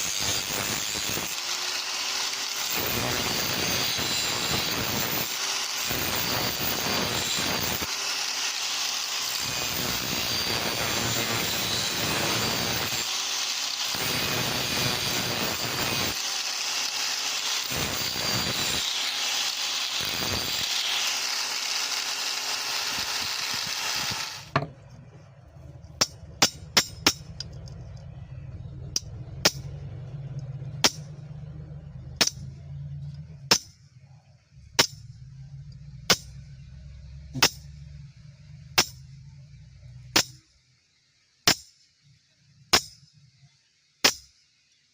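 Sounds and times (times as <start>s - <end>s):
power tool grinding metal: 0.0s - 24.7s
low hum: 24.5s - 40.2s.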